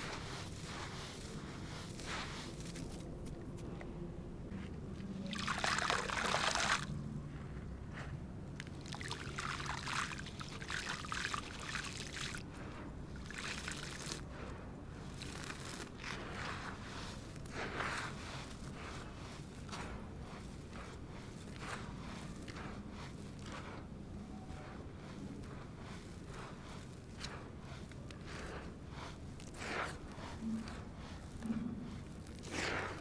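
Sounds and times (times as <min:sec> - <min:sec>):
wet cement and stones crunching: 0:00.0 - 0:03.9, 0:04.5 - 0:33.0.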